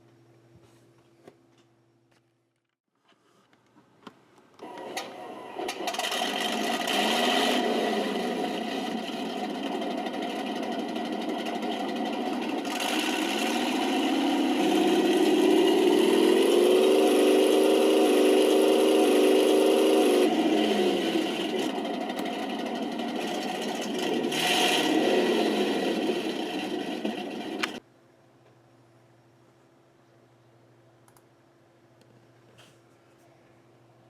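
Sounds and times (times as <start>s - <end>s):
simulated tank engine revving: 4.7s - 27.8s.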